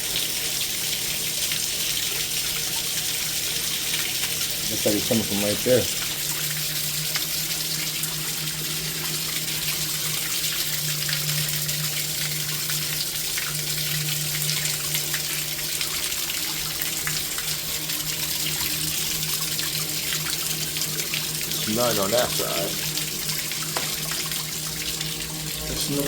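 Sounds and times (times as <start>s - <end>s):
rushing water-like noise: 7.1s - 26.0s.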